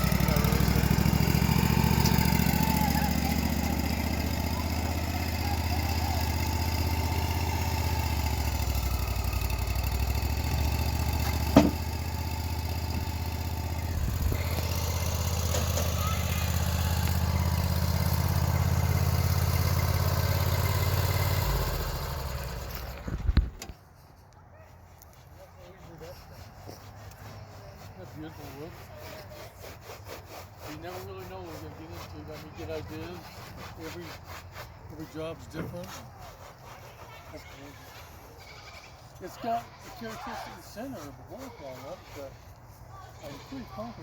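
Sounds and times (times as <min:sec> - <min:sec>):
sawmill engine running: 0:00.0 - 0:23.7, 0:25.2 - 0:38.3
sharp knock: 0:11.5 - 0:11.9.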